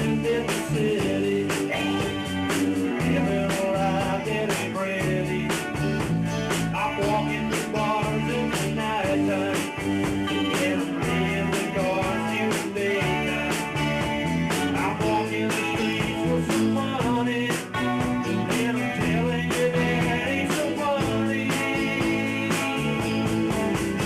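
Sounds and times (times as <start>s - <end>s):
drum kit beat: 0.0s - 24.0s
live rock band playing: 0.0s - 24.0s.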